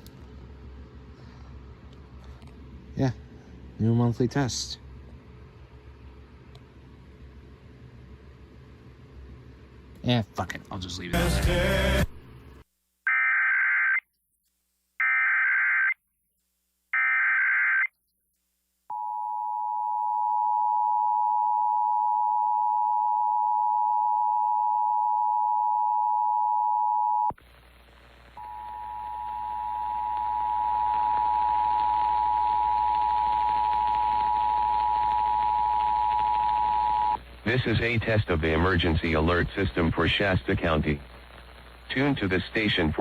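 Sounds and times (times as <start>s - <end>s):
steady hiss: 27.3s - 29.4s, 37.2s - 43.0s.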